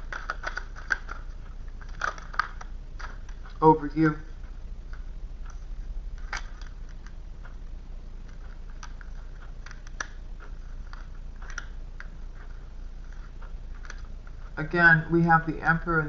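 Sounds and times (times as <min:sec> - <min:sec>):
cards clicking and tapping: 0:00.0 - 0:03.6, 0:06.2 - 0:07.2, 0:08.2 - 0:14.4
low steady hum: 0:00.0 - 0:16.0.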